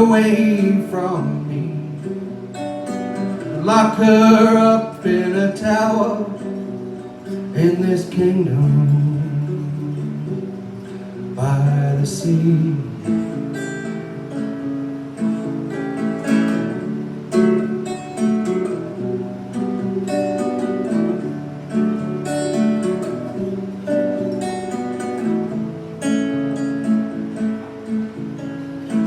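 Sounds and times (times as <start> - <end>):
acoustic guitar strumming: 0.0 - 29.0.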